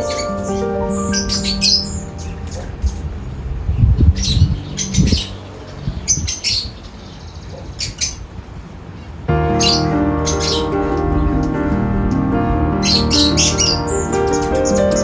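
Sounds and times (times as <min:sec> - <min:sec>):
music: 0:00.0 - 0:03.1, 0:09.3 - 0:15.0
small birds chirping: 0:00.0 - 0:15.0.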